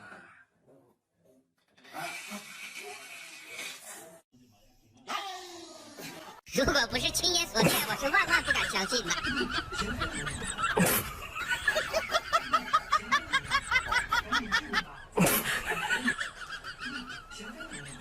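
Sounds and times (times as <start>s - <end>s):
high laughing: 7.6s - 18.0s.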